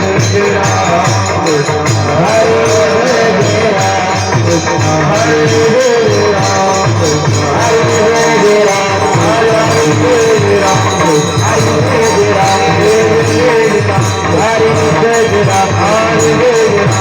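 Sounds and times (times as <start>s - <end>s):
hand drum beat: 0.0s - 17.0s
jingling hand cymbals: 0.0s - 17.0s
devotional melody bending in pitch: 6.1s - 16.9s.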